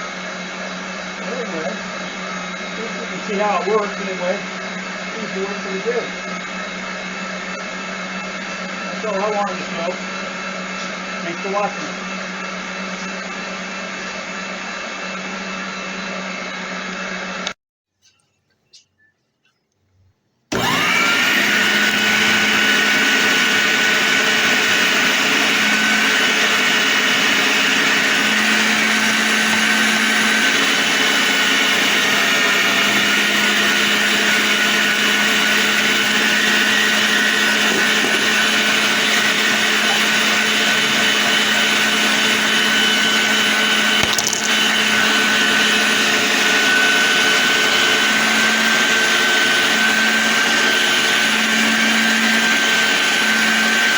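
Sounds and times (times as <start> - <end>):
meat grinder motor whine: 0.0 - 17.6, 20.5 - 53.9.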